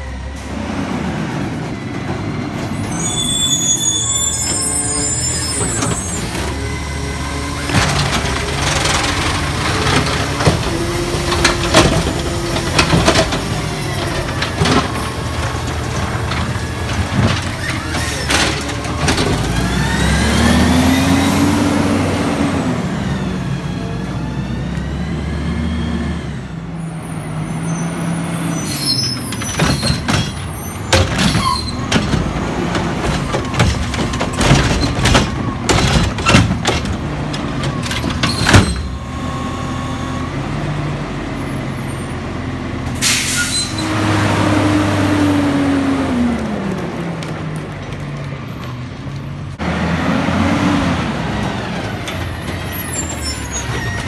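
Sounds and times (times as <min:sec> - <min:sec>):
garbage truck engine running: 0:00.0 - 0:54.0
metal clanks and bangs: 0:07.5 - 0:20.2, 0:29.0 - 0:39.2
air brake hiss: 0:43.0 - 0:43.8.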